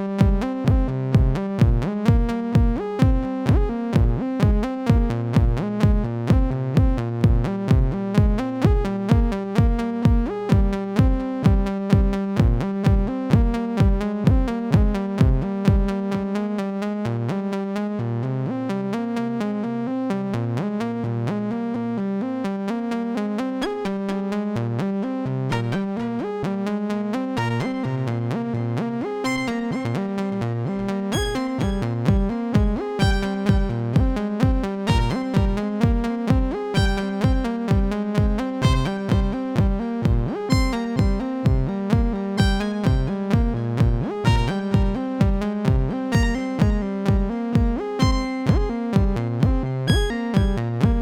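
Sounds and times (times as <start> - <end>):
kick drum pulse: 0.0 - 16.4, 31.1 - 51.0.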